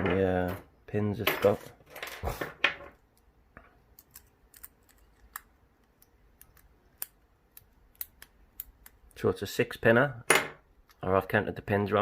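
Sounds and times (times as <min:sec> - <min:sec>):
lock pick clicking on pins: 0:03.9 - 0:09.2.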